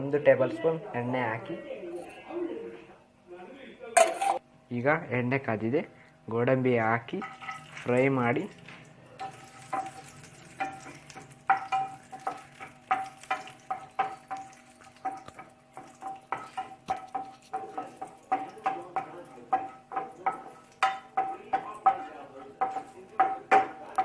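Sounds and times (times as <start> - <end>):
nuts sizzling in oil: 9.2 - 18.8
utensil scraping and tapping pan: 9.2 - 24.0.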